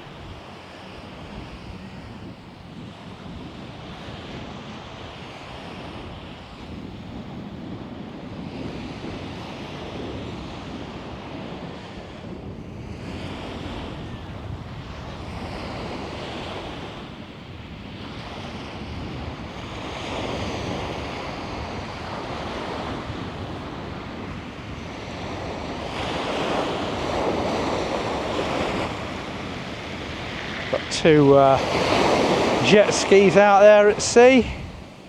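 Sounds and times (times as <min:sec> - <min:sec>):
sea waves breaking on beach: 0:00.0 - 0:35.0
wind buffeting microphone: 0:00.0 - 0:35.0.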